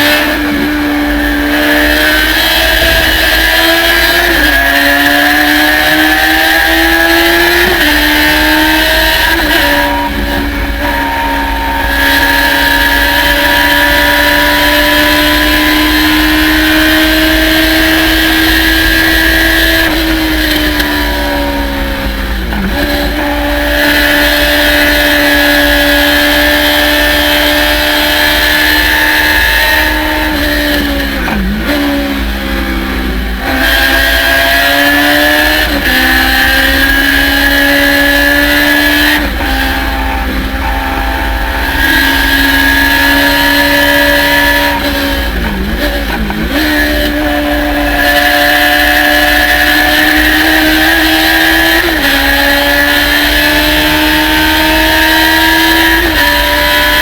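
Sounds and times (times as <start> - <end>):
race car engine at high revs: 0.0 - 57.0.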